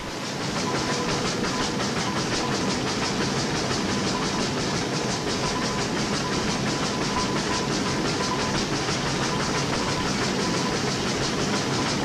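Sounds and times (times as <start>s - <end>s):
steam engine exhaust beat: 0.0s - 12.0s
steam hissing: 0.0s - 12.0s.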